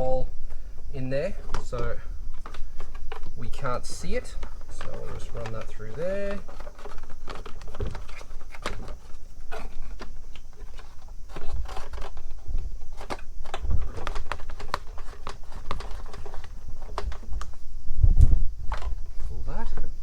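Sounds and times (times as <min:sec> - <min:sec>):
hose handling clicks and rubbing: 0:04.2 - 0:17.6.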